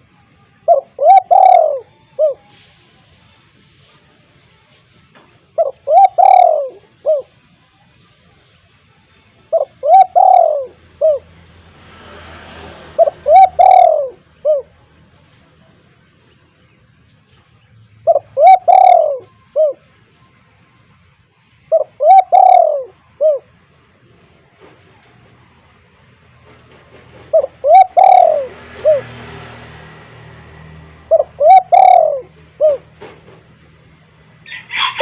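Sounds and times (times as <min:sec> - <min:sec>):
dove cooing: 0:00.7 - 0:02.6, 0:05.5 - 0:07.5, 0:09.5 - 0:11.4, 0:12.9 - 0:14.8, 0:18.0 - 0:19.9, 0:21.7 - 0:23.5, 0:27.2 - 0:29.2, 0:30.9 - 0:33.2.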